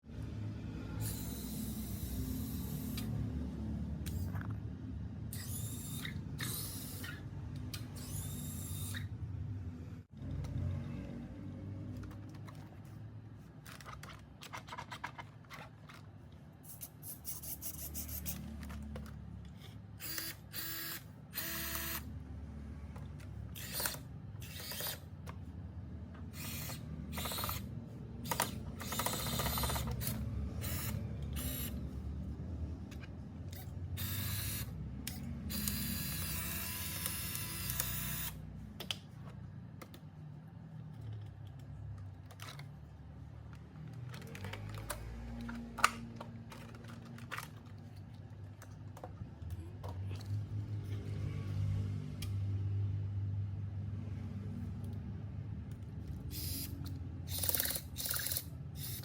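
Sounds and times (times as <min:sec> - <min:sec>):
small parts clicking and rattling: 0:26.2 - 0:31.8, 0:40.8 - 0:50.3, 0:55.8 - 0:59.0.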